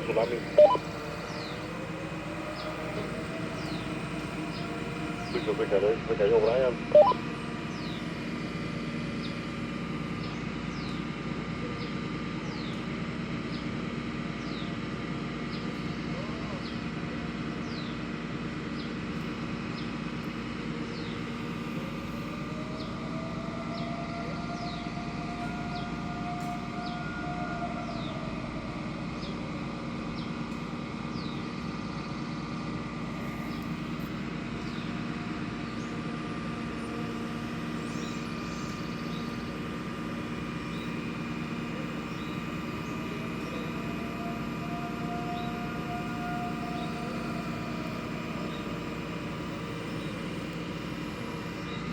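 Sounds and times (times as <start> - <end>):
air siren wailing: 0.0 - 9.5, 21.2 - 31.2, 33.0 - 51.9.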